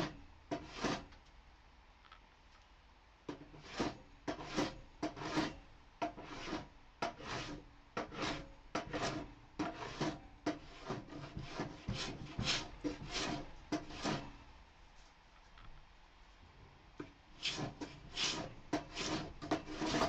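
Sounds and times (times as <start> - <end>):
hand plane rasping on wood: 0.0 - 1.1, 3.5 - 14.3, 17.4 - 20.0.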